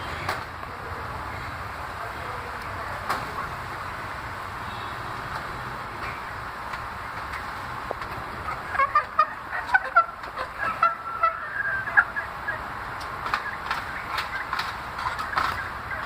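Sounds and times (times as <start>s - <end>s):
steady background hiss: 0.0s - 16.0s
chicks calling: 6.0s - 16.0s.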